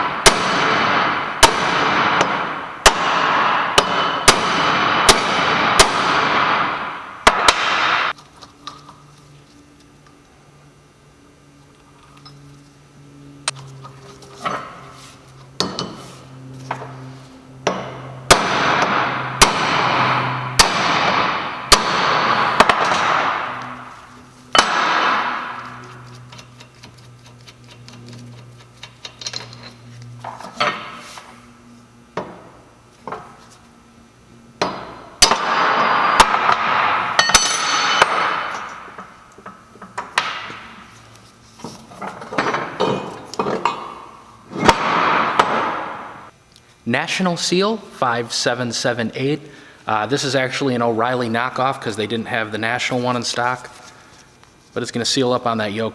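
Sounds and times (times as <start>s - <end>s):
hammer striking metal: 0.0s - 8.2s, 17.6s - 26.0s, 34.6s - 39.2s, 42.4s - 46.3s.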